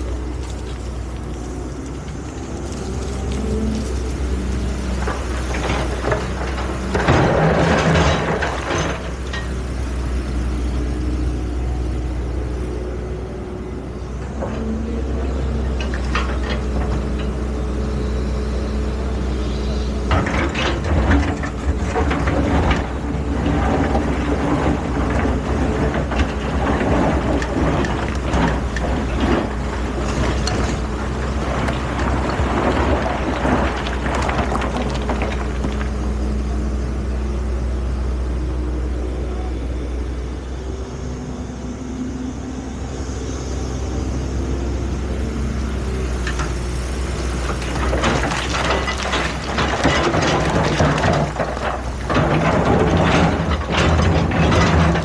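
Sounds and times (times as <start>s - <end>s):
diesel engine droning: 0.0s - 55.0s
metallic clanking and scraping: 47.5s - 55.0s.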